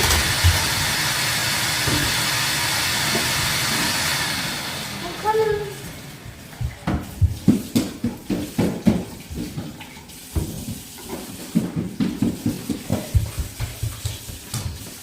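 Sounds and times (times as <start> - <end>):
hard objects knocking and clattering: 10.4 - 14.8.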